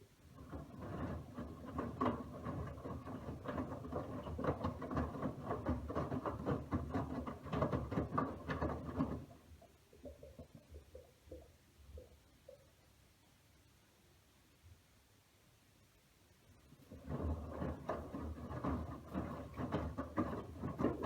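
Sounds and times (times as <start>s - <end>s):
washing machine drum tumbling laundry: 0.2s - 10.5s, 16.7s - 21.0s.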